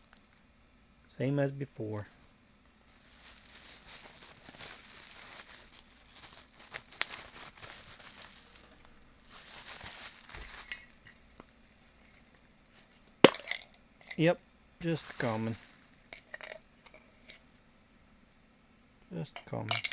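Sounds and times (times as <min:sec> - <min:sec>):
packaging crinkling and rustling: 0:02.1 - 0:13.6, 0:14.8 - 0:17.5.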